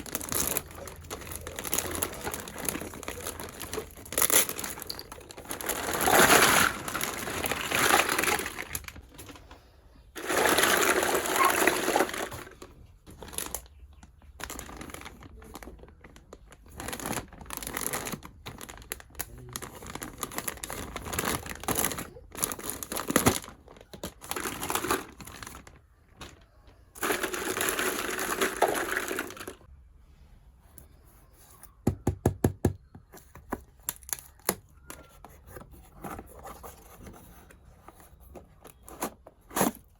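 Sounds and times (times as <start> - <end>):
plastic packaging crinkling: 0.0 - 9.6, 10.2 - 29.7.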